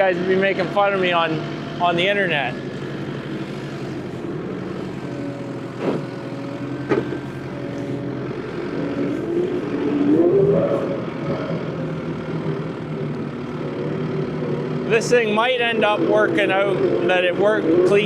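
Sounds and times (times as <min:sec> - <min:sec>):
loader engine running: 0:00.0 - 0:18.0
sharp knocks: 0:06.9 - 0:07.2.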